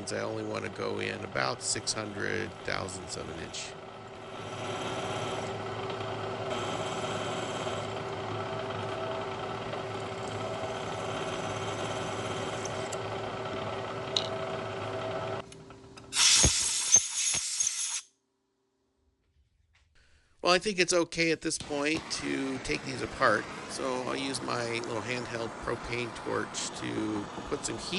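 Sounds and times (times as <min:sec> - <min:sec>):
milling machine spindle hum: 0:00.0 - 0:15.5, 0:21.7 - 0:27.9.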